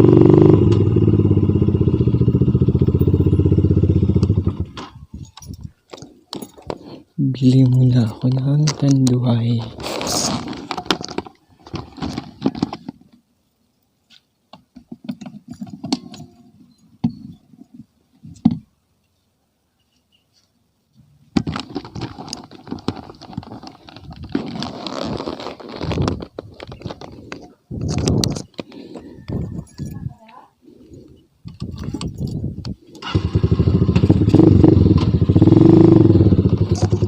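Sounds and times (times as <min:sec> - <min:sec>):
small objects clinking and rustling: 0:21.4 - 0:30.1.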